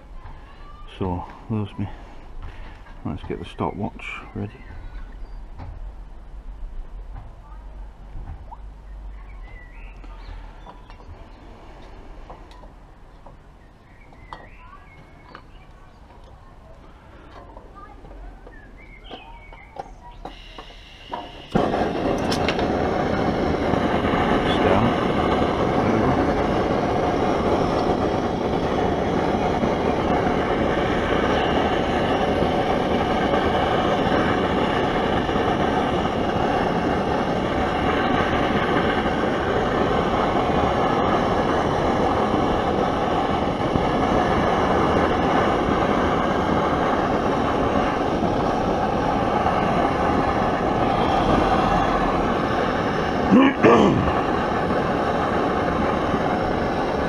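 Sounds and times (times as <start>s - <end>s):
gas stove burner rushing: 18.8s - 57.0s.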